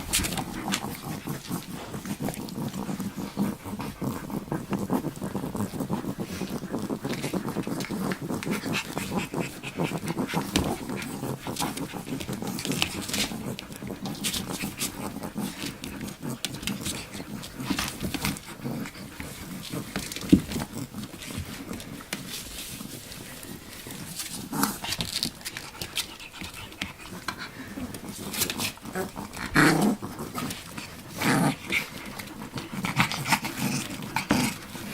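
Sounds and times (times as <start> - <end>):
puppies making small noises: 0.0 - 34.9
rustling: 0.0 - 34.9.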